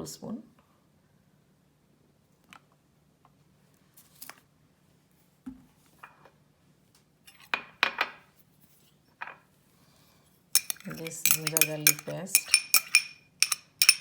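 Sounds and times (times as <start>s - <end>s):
bottle and bowl tapping: 10.6s - 14.0s
sharp clinks against a dish: 10.6s - 14.0s.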